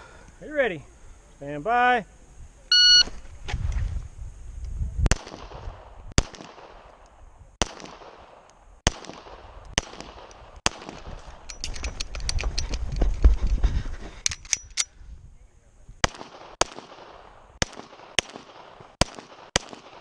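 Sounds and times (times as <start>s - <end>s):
shot timer beep: 2.7s - 3.1s
pistol shots: 5.1s - 11.4s, 16.0s - 20.0s.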